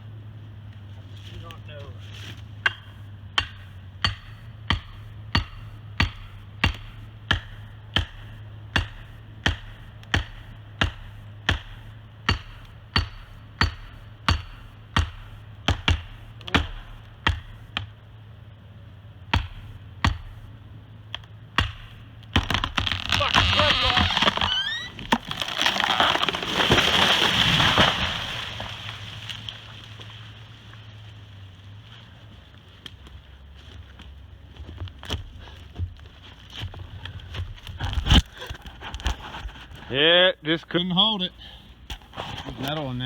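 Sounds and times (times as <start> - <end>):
steady low hum: 0.0 - 23.1
hammer blows on felling wedge: 21.6 - 26.8.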